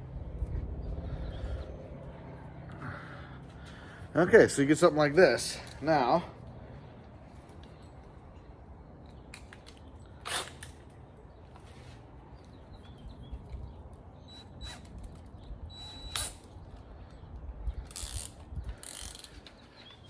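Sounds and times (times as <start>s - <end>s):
small squeaks: 14.2s - 16.6s, 17.8s - 20.0s.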